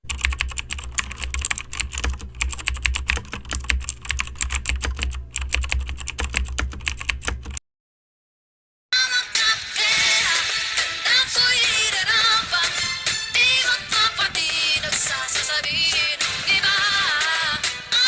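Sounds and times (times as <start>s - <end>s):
rapid keyboard typing: 0.0s - 7.6s.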